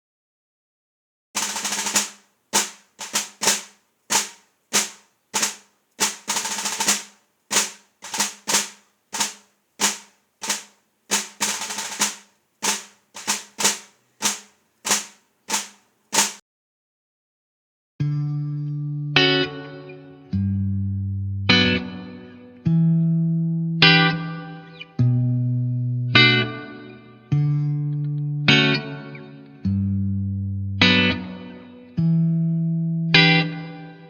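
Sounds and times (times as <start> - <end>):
snare drum rolls: 1.4 - 16.4
snare drum strikes and flams: 1.4 - 16.4.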